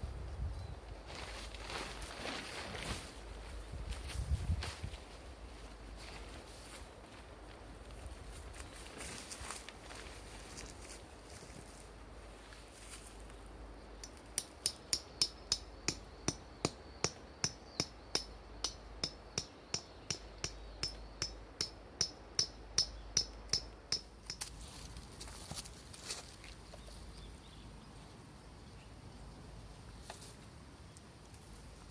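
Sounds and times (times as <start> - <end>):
hammer striking metal tent peg: 14.0 - 24.6.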